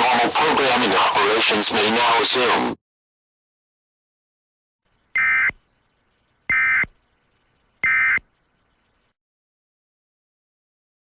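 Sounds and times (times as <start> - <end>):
buzzing digital data tones: 5.2 - 9.0.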